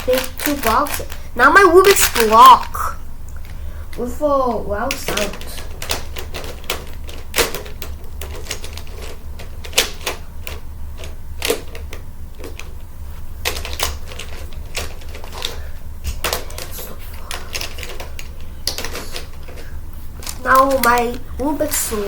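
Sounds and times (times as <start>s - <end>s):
plastic puzzle pieces clicking: 0.0s - 1.2s, 17.3s - 19.6s.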